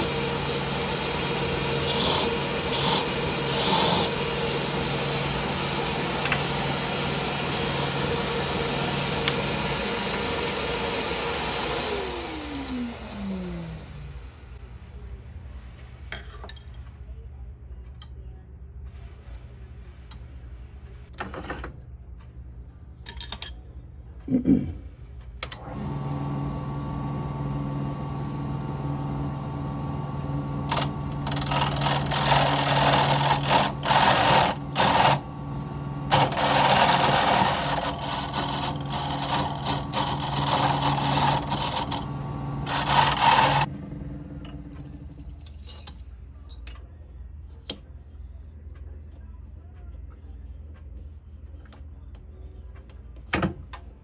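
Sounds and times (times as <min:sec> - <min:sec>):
electric power tool humming: 0:00.0 - 0:14.1, 0:25.8 - 0:43.7
loud rasping: 0:01.3 - 0:04.6, 0:30.7 - 0:35.2, 0:36.1 - 0:43.7.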